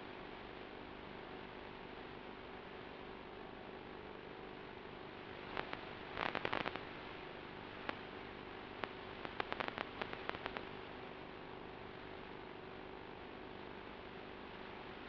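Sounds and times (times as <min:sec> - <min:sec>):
faint hum: 0:00.0 - 0:15.0
radio static hiss: 0:04.7 - 0:15.0
crackling clicks: 0:05.4 - 0:07.0, 0:07.8 - 0:08.1, 0:08.8 - 0:10.8.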